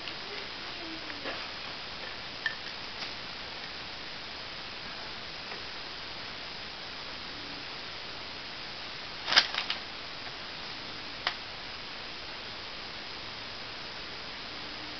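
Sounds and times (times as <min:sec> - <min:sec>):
steady hiss: 0:00.0 - 0:14.9.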